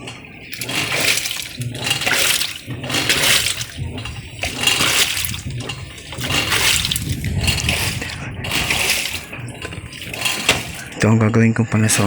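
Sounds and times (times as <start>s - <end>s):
washing machine water sloshing: 0.0s - 12.0s.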